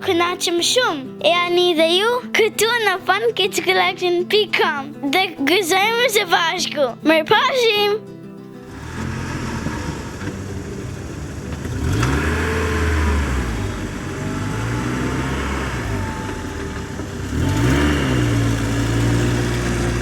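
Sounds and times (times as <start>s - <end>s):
car engine revving: 8.7s - 20.0s.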